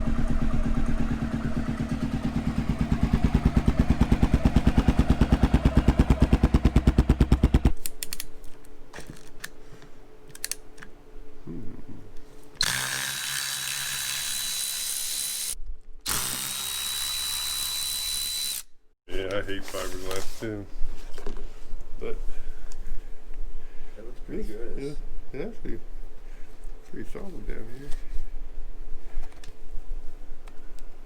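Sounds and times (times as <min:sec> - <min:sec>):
motorcycle engine running: 0:00.0 - 0:07.8
power tool whining: 0:12.6 - 0:18.7.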